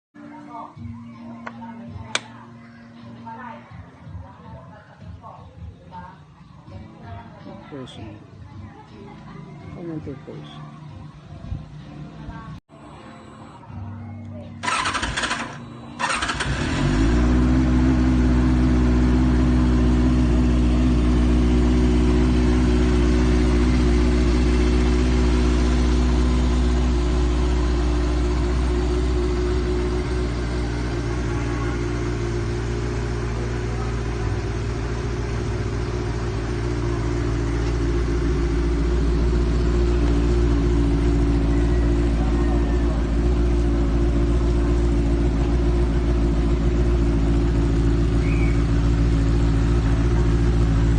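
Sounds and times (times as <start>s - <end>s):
motorcycle engine starting and idling: 14.6s - 50.9s.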